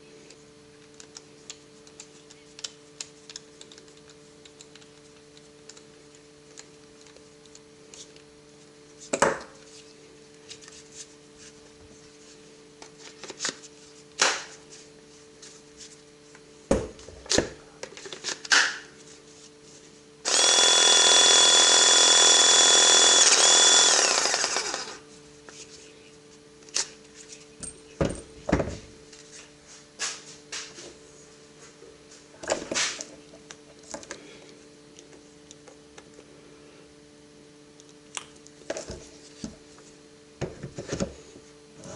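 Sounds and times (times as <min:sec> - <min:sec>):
power tool electric motor running: 0:20.2 - 0:25.1.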